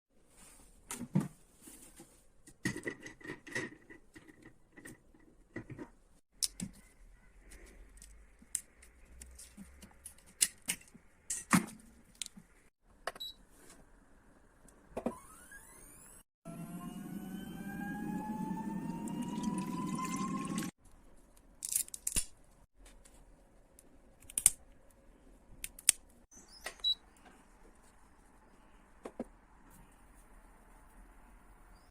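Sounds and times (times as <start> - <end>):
plastic doll parts clicking: 21.4 - 22.4, 24.1 - 24.8, 25.6 - 26.1.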